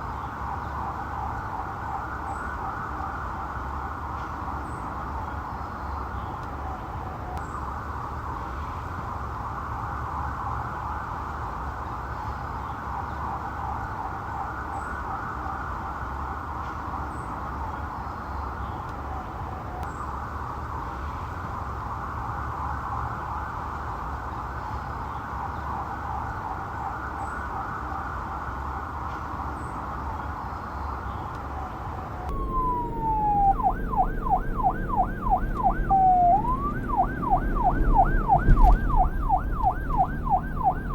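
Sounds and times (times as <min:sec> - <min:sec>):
police siren yelping: 0:32.3 - 0:40.9
siren wailing: 0:32.3 - 0:40.9
traffic rumble: 0:32.3 - 0:40.9
wind rumble: 0:32.3 - 0:40.9.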